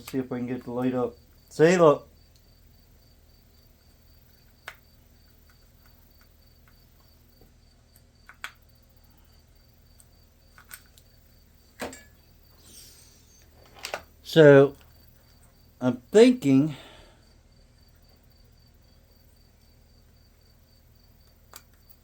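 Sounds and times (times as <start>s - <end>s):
cricket chirping: 0.0s - 22.0s.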